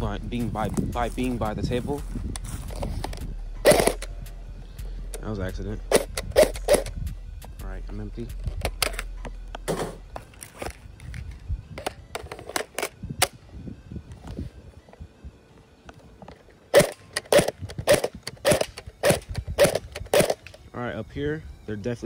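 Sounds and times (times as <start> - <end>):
airsoft gun firing shots: 3.7 - 4.0, 5.9 - 6.9, 16.7 - 20.5.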